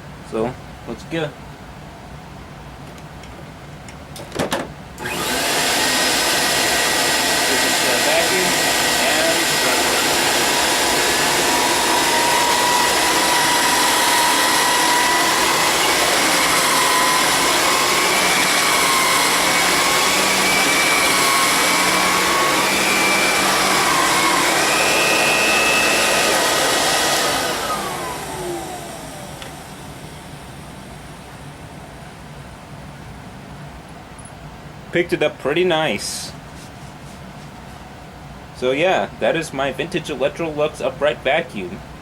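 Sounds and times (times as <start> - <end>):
vacuum motor spinning down: 5.0 - 31.7
vacuum cleaner running: 5.0 - 32.6.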